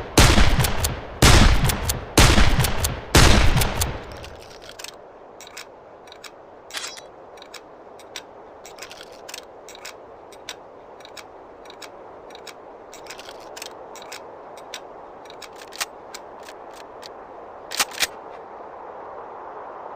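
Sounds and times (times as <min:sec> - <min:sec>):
steady hiss: 0:00.0 - 0:19.9
rifle mechanism clicking: 0:02.6 - 0:18.3.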